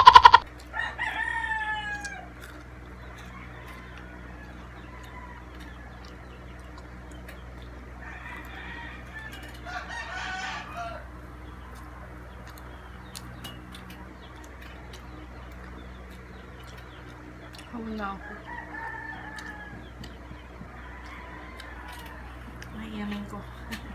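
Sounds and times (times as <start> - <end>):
small clicks: 0.0 - 0.9
rooster crowing: 0.0 - 6.6, 7.9 - 13.4, 18.0 - 23.9
steady low hum: 0.0 - 23.9.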